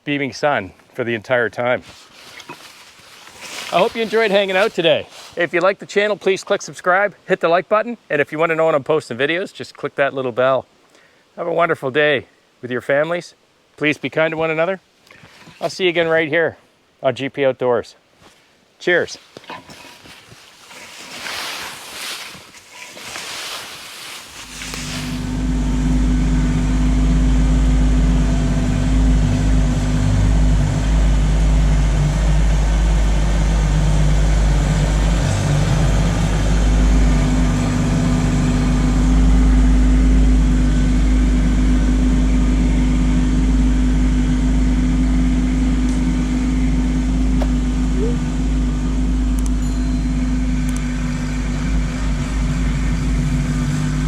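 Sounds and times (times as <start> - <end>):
patchy rustling noise: 1.6 - 6.5, 18.1 - 25.6
tractor diesel engine droning: 23.0 - 54.0.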